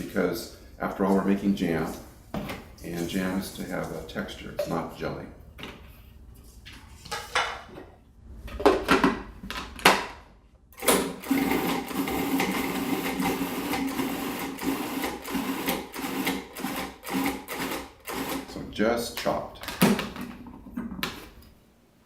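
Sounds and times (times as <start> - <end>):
food processor chopping: 10.8 - 18.5.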